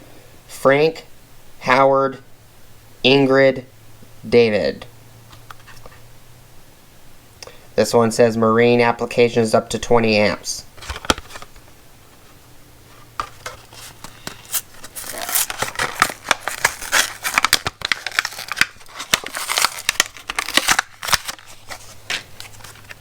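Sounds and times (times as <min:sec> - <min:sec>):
plastic packaging crinkling and tearing: 0:13.2 - 0:23.0.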